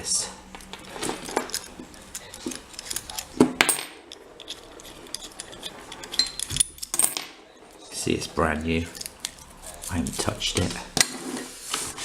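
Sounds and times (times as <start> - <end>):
small metal clicks and clinks: 4.1 - 7.2.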